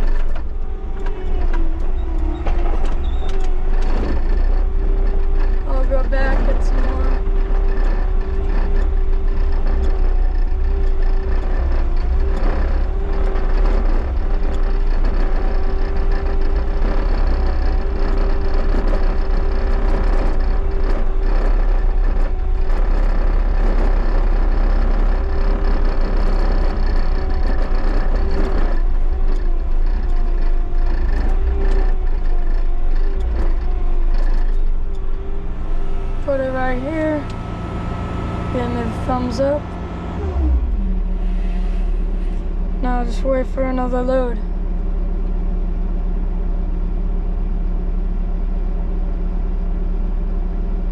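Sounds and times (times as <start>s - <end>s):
machine clanking and rattling: 0.0s - 37.5s
diesel engine running: 0.0s - 50.9s.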